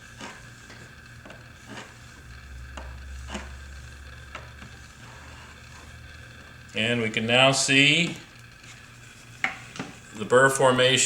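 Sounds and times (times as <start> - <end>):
scissor blade rubbing on a strop: 0.0 - 2.2.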